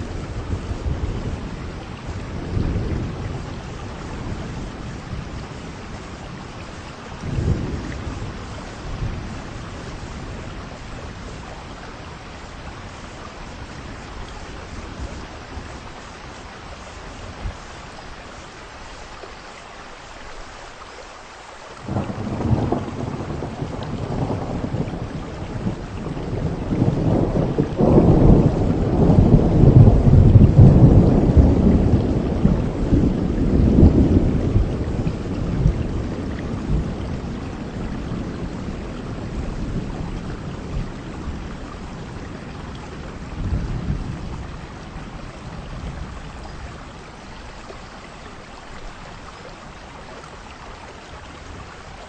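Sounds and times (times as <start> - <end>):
thunder rumbling: 0.0 - 18.1, 21.8 - 47.4
heavy rain: 0.0 - 52.0.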